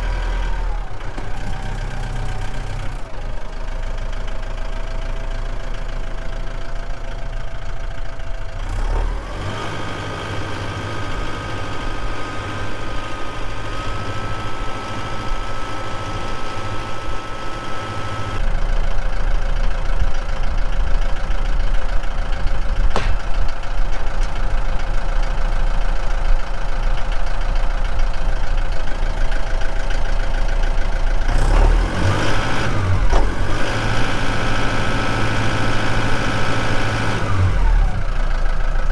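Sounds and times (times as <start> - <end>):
tractor engine running: 0.0 - 38.9
sharp click: 22.9 - 23.3.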